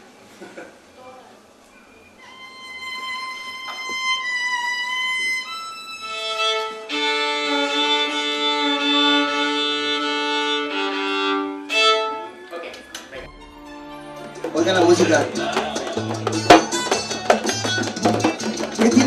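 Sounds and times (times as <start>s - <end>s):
solo violin: 2.2s - 12.6s.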